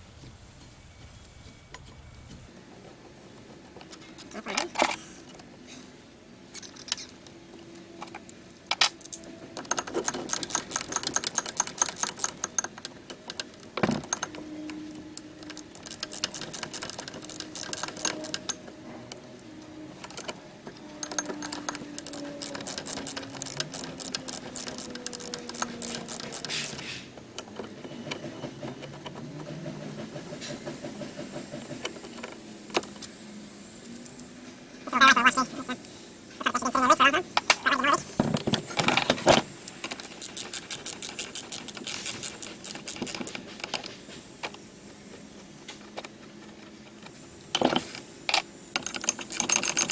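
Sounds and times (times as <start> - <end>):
metal clinks and knocks: 8.0 - 29.6, 47.1 - 49.9
rapid metallic clicking: 8.1 - 33.1, 38.8 - 44.6, 47.0 - 49.9.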